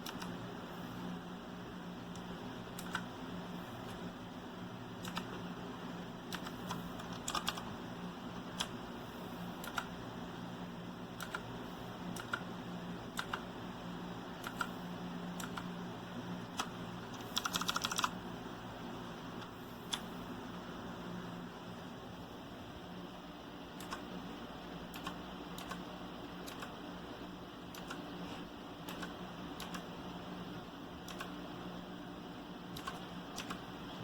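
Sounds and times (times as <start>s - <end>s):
clicky mechanical keyboard keystrokes: 0.0s - 0.4s, 2.1s - 3.1s, 5.0s - 5.4s, 6.3s - 7.7s, 9.6s - 9.9s, 12.1s - 12.4s, 13.2s - 13.4s, 14.4s - 14.7s, 16.6s - 18.1s, 23.8s - 24.0s, 24.9s - 25.8s, 26.4s - 26.8s, 27.7s - 28.0s, 28.8s - 29.9s, 31.0s - 31.4s, 32.7s - 33.6s.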